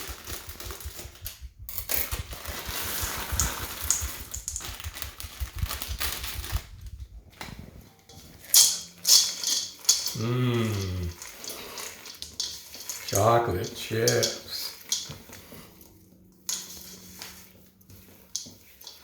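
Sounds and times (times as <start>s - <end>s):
chocolate chips clicking into dough: 3.3s - 5.4s, 8.5s - 15.1s.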